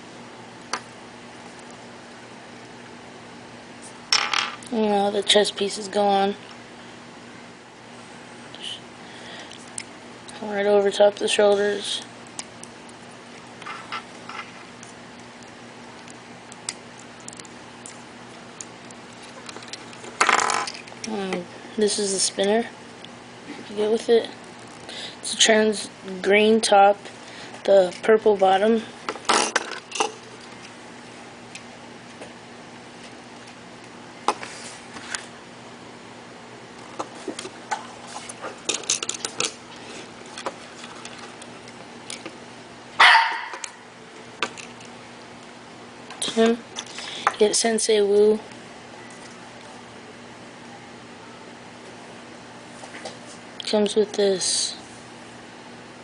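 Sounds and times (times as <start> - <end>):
faint steady hum: 0.0 - 56.0
dog bark: 43.0 - 43.7.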